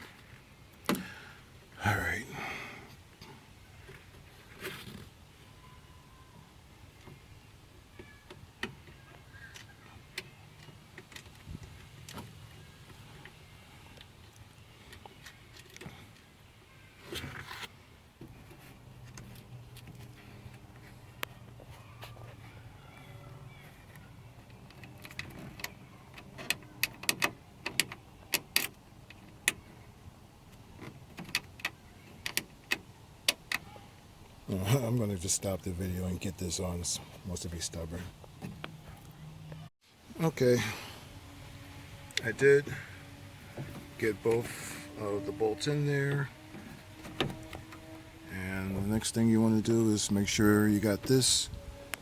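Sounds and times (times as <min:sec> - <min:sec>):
steady low hum: 0:34.4 - 0:52.0.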